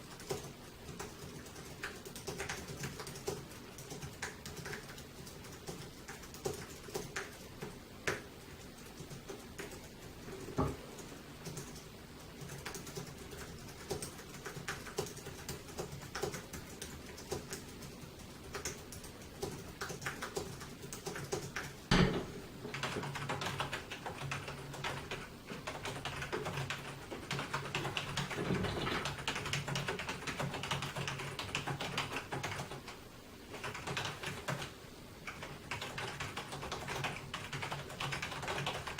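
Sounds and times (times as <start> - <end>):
typing on a keyboard: 0.0 - 21.9, 22.7 - 38.9
sharp knock: 21.9 - 22.4.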